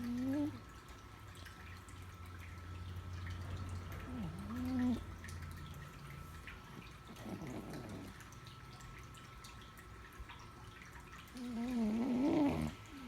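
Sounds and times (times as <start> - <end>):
cat snoring: 4.1 - 5.1, 7.1 - 8.2, 11.4 - 13.0.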